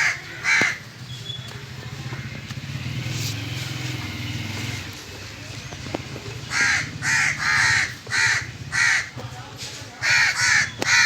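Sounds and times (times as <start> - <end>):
crow cawing: 0.0 - 0.9, 6.4 - 9.2, 10.0 - 11.0.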